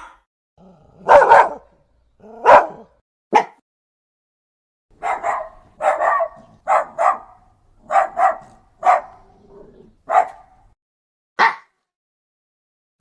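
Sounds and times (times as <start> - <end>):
dog barking: 0.0 - 0.2, 1.0 - 3.6, 5.0 - 10.8, 11.4 - 11.8.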